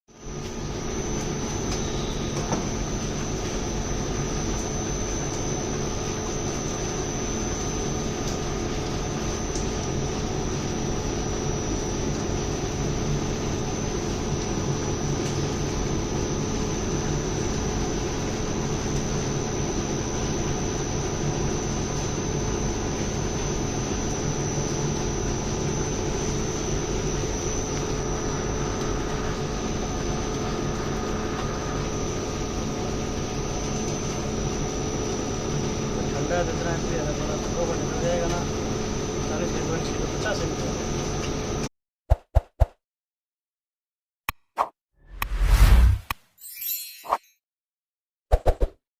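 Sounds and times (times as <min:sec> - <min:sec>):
thin high whine: 0:00.2 - 0:05.0, 0:45.1 - 0:47.3.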